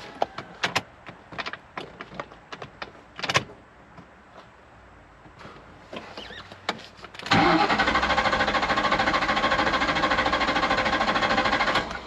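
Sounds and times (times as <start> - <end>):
starter cranking engine: 7.3 - 12.0.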